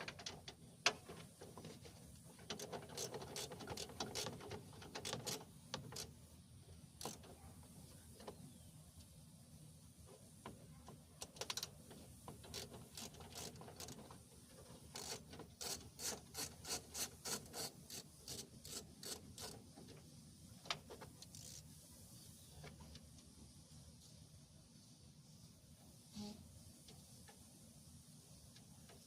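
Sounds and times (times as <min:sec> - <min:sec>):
ratchet wrench clicking: 0:12.4 - 0:14.0, 0:15.0 - 0:19.6, 0:21.2 - 0:21.6.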